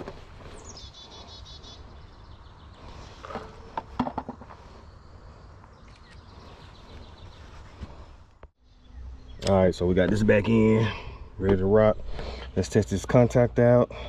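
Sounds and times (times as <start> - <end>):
bird trill: 0.6 - 3.2.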